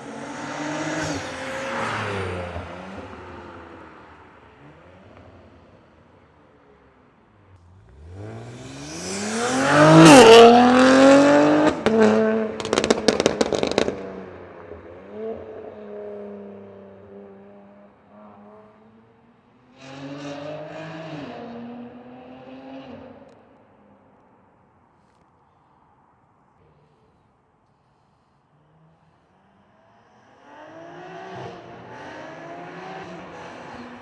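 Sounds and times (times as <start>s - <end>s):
car engine accelerating hard: 7.6s - 14.0s
exhaust crackles and pops: 12.6s - 14.0s.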